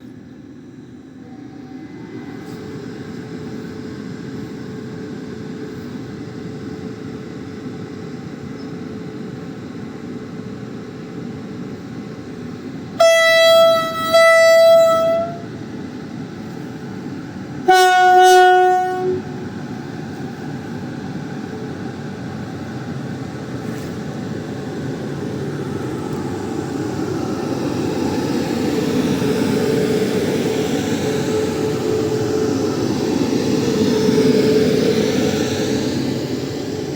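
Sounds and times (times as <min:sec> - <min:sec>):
train inverter and blowers humming: 0:00.0 - 0:36.9
train horn blasts: 0:13.0 - 0:15.6, 0:17.6 - 0:19.5.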